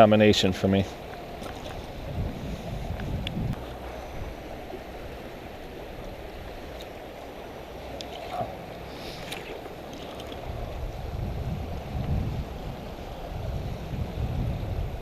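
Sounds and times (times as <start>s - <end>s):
flowing creek water: 0.0s - 15.0s.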